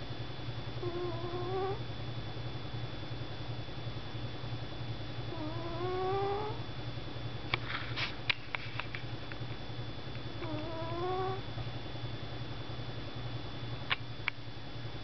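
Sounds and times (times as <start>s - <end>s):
cat snoring whistling breaths: 0.8s - 1.8s, 5.3s - 6.6s, 10.4s - 11.4s.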